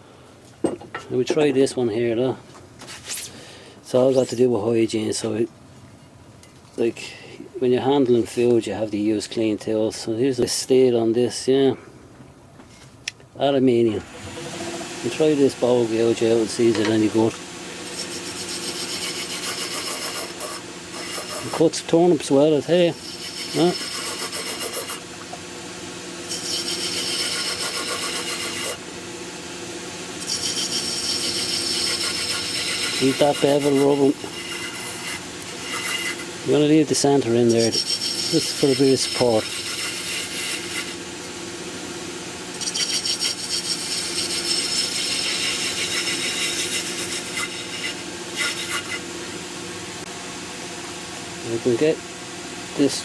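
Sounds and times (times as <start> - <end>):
lathe humming: 14.0 - 53.0
gouge scraping on lathe: 14.3 - 25.1, 26.3 - 28.8, 30.2 - 41.0, 42.5 - 49.0.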